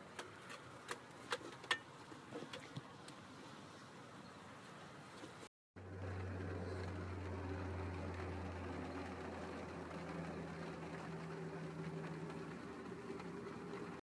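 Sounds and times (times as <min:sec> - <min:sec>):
low mechanical hum: 0:05.8 - 0:14.0.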